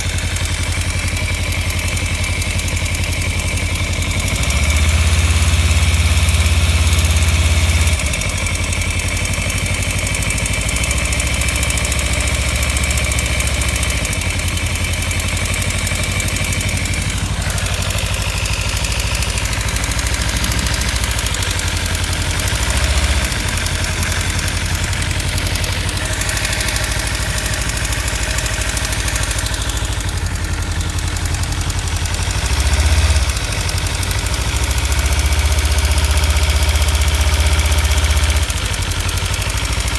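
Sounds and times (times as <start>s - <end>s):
fast ticking rattle: 0.0s - 39.9s
motorcycle engine idling: 0.0s - 39.9s.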